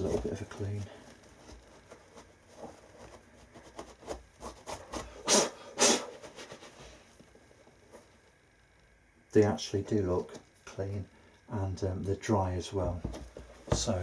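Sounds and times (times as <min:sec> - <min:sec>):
rubbing and handling shoes: 0:00.0 - 0:08.1, 0:12.8 - 0:14.0.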